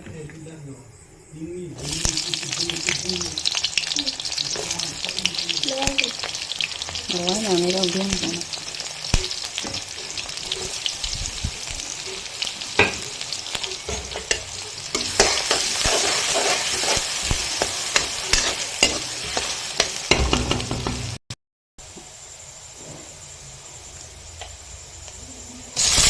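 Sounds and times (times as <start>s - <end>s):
chicken sizzling in a pan: 1.7s - 21.2s, 21.8s - 26.0s
utensil scraping a pan: 13.7s - 20.6s.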